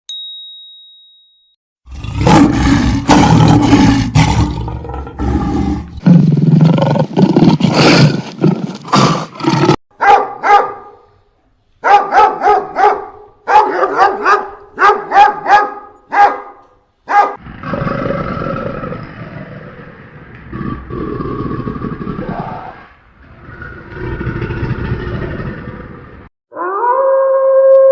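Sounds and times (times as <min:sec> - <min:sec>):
big cats roaring: 0:01.9 - 0:09.8, 0:17.4 - 0:26.3
dog barking: 0:10.0 - 0:11.1, 0:11.8 - 0:17.4.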